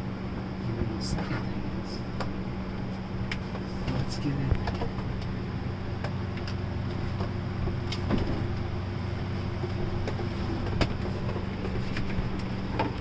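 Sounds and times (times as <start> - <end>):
steady low hum: 0.0 - 13.0
refrigerator bumping and scraping wood: 6.9 - 8.6.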